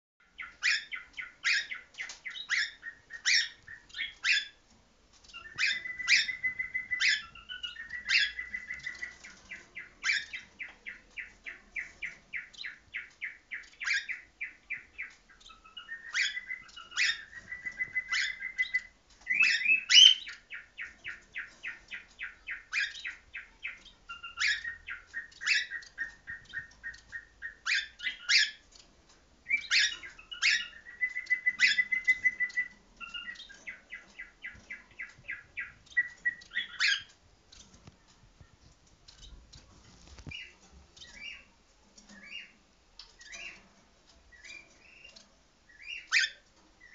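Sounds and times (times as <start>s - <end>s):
cockatiels chirping: 0.2s - 4.6s, 5.3s - 28.8s, 29.4s - 43.7s, 44.3s - 46.9s
whistled notes: 5.4s - 8.7s, 30.6s - 33.4s.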